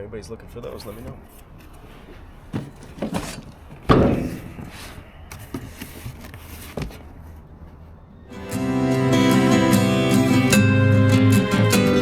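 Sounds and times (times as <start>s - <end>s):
knocks of hard objects: 2.5s - 5.9s.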